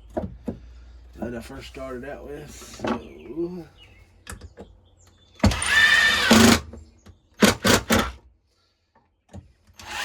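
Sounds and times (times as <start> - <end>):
power drill motor whine: 5.4 - 6.7, 7.4 - 8.2, 9.8 - 10.0.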